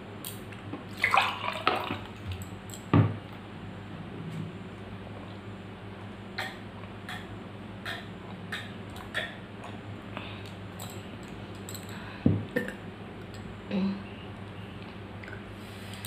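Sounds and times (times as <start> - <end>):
short low hum: 3.4 - 6.2
utensil and mouth clicks: 6.4 - 9.8.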